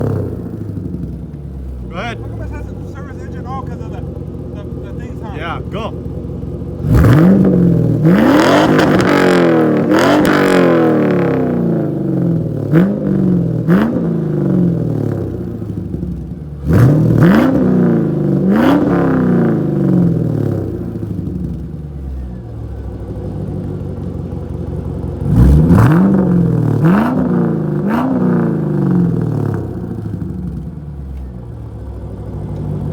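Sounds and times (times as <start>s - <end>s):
car engine idling: 0.0s - 17.3s, 18.0s - 26.9s, 28.7s - 32.9s
car engine revving: 0.0s - 22.2s, 25.1s - 32.9s.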